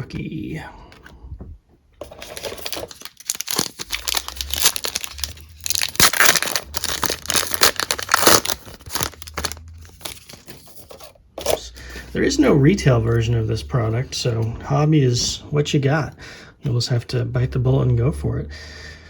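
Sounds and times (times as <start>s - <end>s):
card pack wrapper crinkling: 2.0s - 11.6s.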